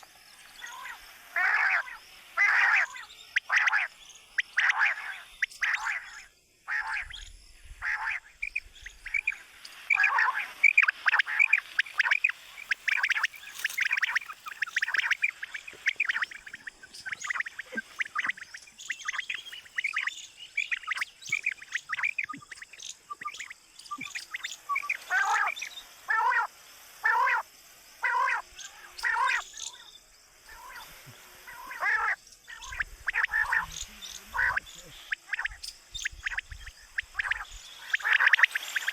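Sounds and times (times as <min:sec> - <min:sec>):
quail calling: 0:00.6 - 0:07.2, 0:07.8 - 0:27.4, 0:28.0 - 0:29.9, 0:30.5 - 0:38.9.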